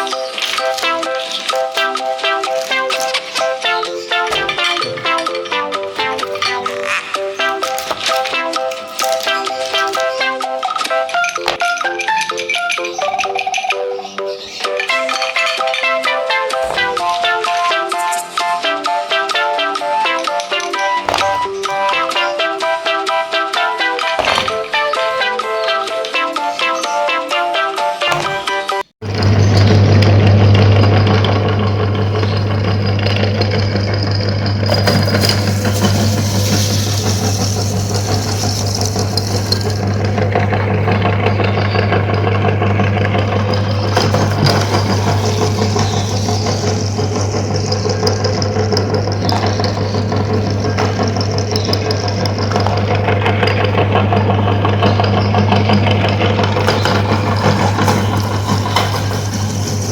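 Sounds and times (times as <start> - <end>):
crackly grinding noise: 0.0 - 59.9
meat grinder motor hum: 29.0 - 59.9.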